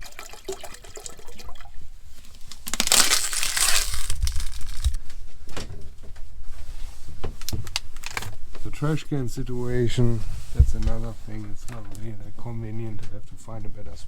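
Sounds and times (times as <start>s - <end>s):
water pouring from a bottle: 0.0s - 5.0s
plastic bottle crinkling: 2.2s - 5.0s, 7.4s - 8.3s.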